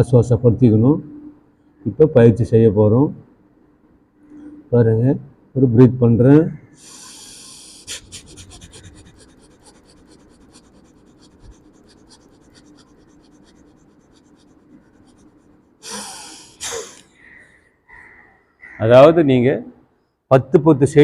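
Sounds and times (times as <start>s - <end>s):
long loud breaths in and out: 6.8s - 9.8s, 15.8s - 17.7s
short forceful breaths out: 15.8s - 17.1s.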